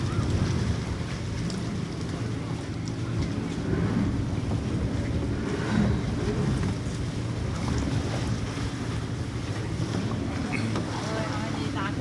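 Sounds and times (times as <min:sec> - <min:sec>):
boat engine running: 0:00.0 - 0:12.0
wind buffeting microphone: 0:00.0 - 0:12.0.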